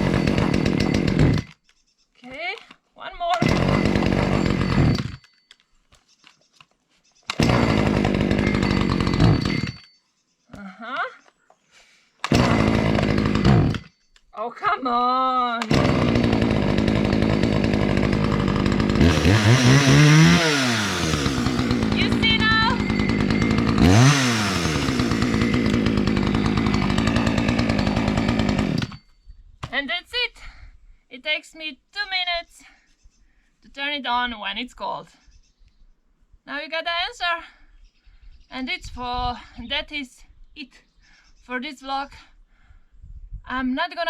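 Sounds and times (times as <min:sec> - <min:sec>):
chainsaw engine running: 0:00.0 - 0:01.5, 0:03.3 - 0:05.3, 0:07.3 - 0:09.9, 0:12.2 - 0:13.9, 0:15.6 - 0:29.0
starter cord pull: 0:07.3 - 0:09.9, 0:12.2 - 0:13.9.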